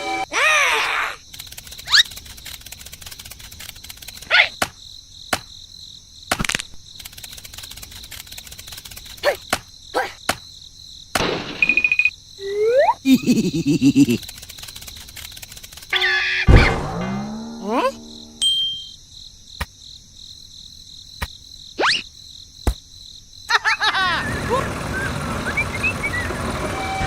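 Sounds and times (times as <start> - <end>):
crickets chirping: 0.1 - 26.2
sharp clicks: 1.3 - 5.5, 6.3 - 9.6, 14.0 - 16.0.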